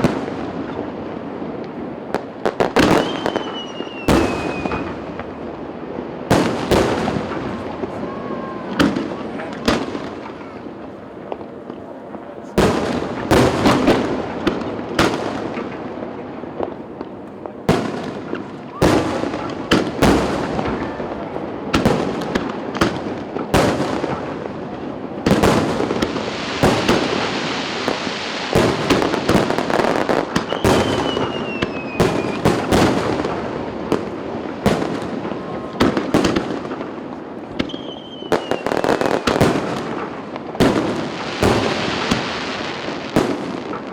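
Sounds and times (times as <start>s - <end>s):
fireworks booming: 0.0s - 43.9s
fireworks crackling: 0.0s - 43.9s
falling firework whistles: 2.6s - 5.2s, 26.0s - 33.0s, 37.6s - 39.4s.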